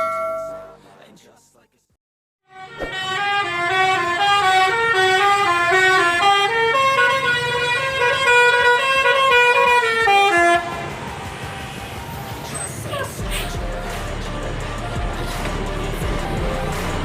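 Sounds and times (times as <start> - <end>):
multi-tone bus horn tune: 2.4 - 11.3.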